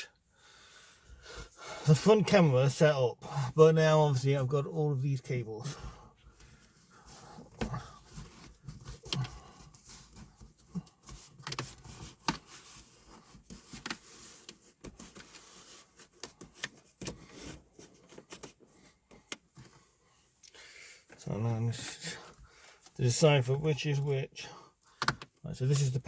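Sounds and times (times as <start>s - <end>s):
cables and plastic parts handled: 5.6s - 23.0s, 24.7s - 26.0s.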